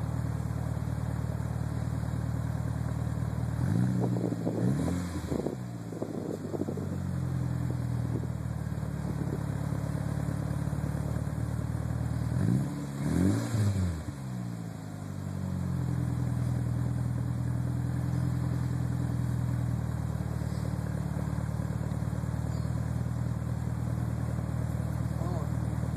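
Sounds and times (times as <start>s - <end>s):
car engine idling: 0.0s - 25.9s
engine revving: 3.5s - 6.9s, 12.1s - 14.6s.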